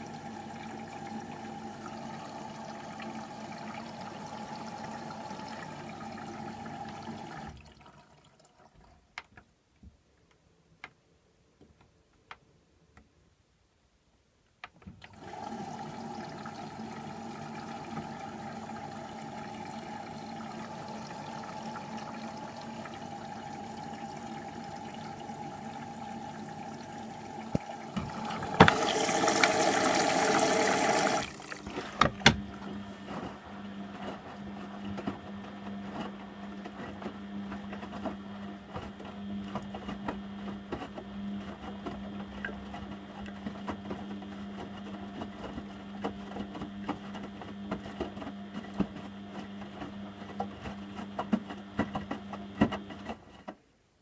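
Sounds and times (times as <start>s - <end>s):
washing machine humming: 0.0s - 9.0s, 15.0s - 53.4s
water rushing in: 15.2s - 32.3s.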